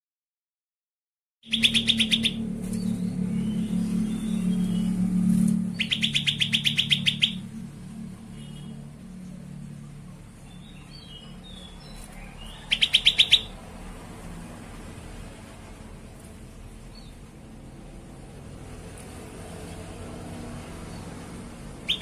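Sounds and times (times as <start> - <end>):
bird trilling: 1.4 - 7.6, 10.6 - 13.6
low hum: 1.5 - 21.8.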